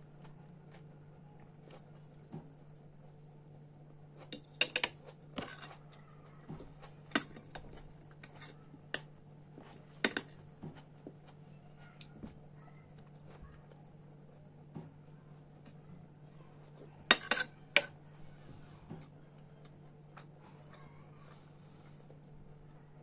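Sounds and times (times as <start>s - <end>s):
utensils clicking and tapping: 4.3s - 5.7s, 7.2s - 9.1s, 10.0s - 10.4s, 17.1s - 17.9s.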